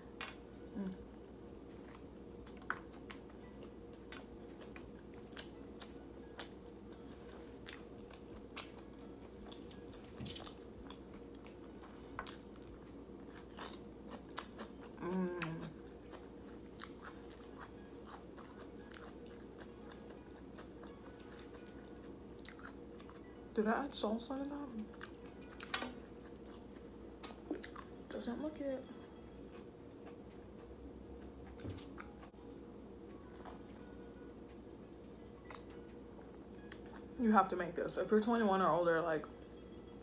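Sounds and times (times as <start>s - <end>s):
faint steady hum: 0.0s - 40.0s
chewing and biting food: 1.3s - 23.4s, 24.9s - 27.9s.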